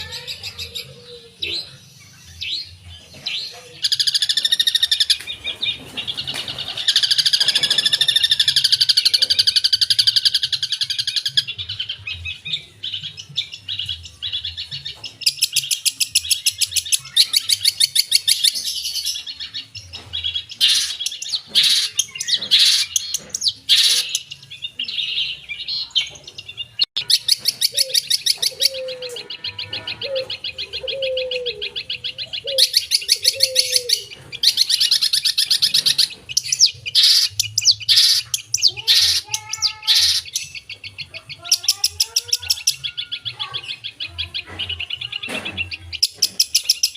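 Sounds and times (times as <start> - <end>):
shrike chattering song: 0.0 - 46.9
lower repeated bird notes: 26.8 - 41.1.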